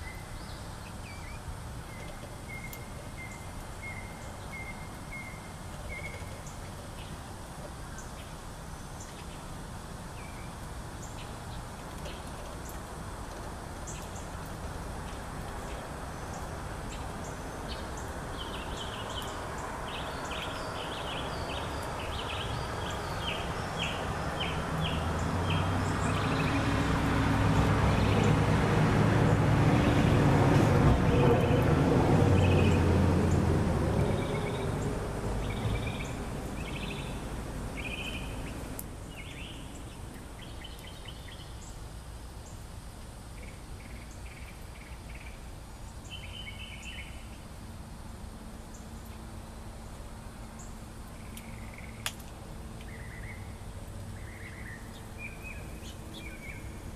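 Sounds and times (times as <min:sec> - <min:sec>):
small birds chirping: 0:00.0 - 0:26.7, 0:34.0 - 0:42.6, 0:43.4 - 0:47.4, 0:50.6 - 0:56.9
vehicle passing: 0:18.6 - 0:38.8.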